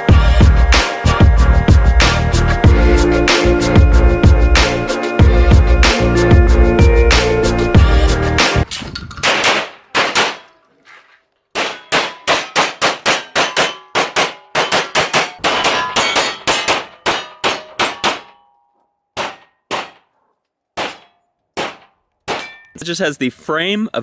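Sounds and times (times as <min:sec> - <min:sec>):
rapid metallic clangs: 0:11.6 - 0:20.2.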